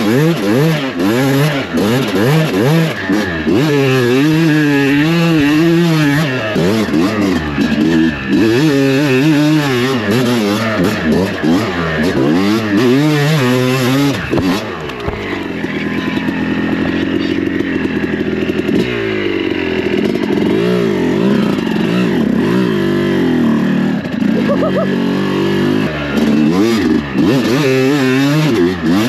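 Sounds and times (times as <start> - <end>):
dirt bike engine revving: 0.0 - 29.0.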